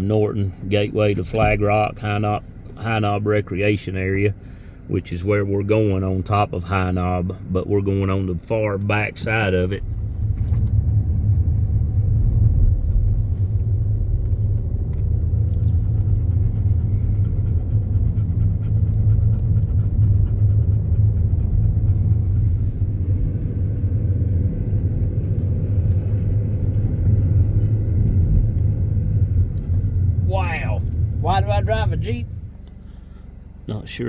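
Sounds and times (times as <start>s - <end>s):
car engine and tyre rumble: 0.0s - 34.0s
dog panting: 15.6s - 22.9s.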